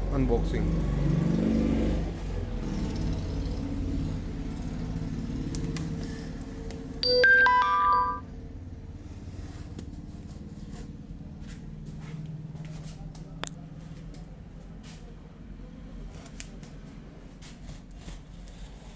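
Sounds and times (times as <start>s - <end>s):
short electronic chime: 7.0s - 8.2s.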